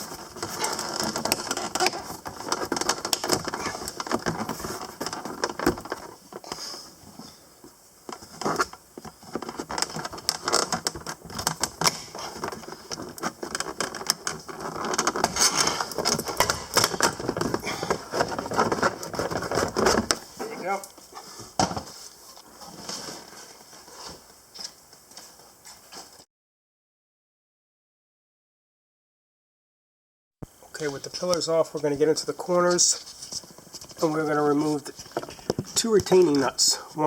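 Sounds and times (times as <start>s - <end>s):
plastic trim clicking and crackling: 0.0s - 6.1s.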